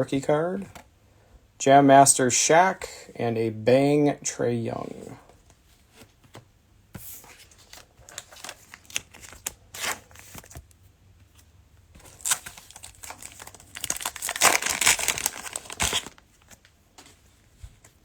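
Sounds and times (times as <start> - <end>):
cellophane wrapper crinkling: 7.6 - 10.8, 12.0 - 16.7.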